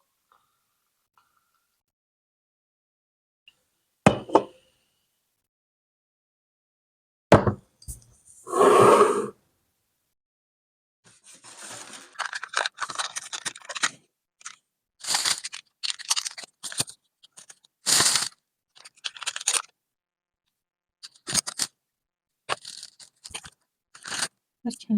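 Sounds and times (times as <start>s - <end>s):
crunching and chewing food: 11.8s - 19.7s, 22.5s - 24.3s.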